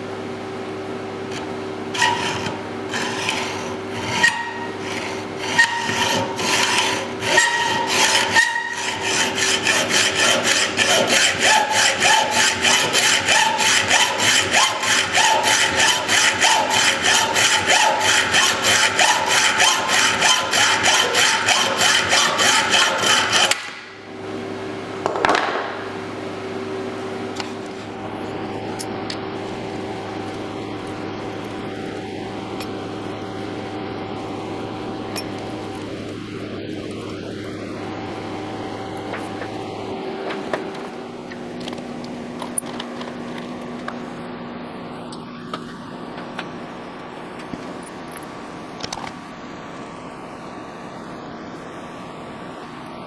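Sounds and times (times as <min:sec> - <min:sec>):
hand tool rasping metal: 0:01.3 - 0:23.8.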